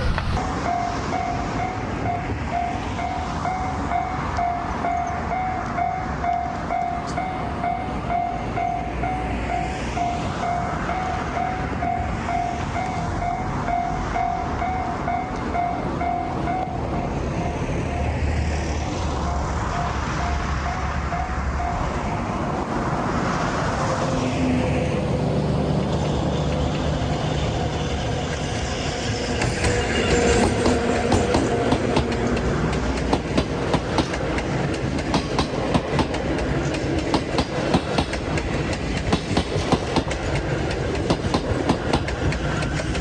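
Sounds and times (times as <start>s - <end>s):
train rumbling and rattling: 0.0s - 43.0s
crossing bell clanging: 26.2s - 34.1s.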